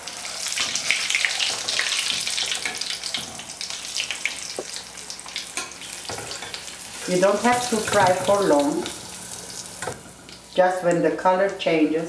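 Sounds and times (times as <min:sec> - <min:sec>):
food sizzling in hot oil: 0:00.0 - 0:10.6.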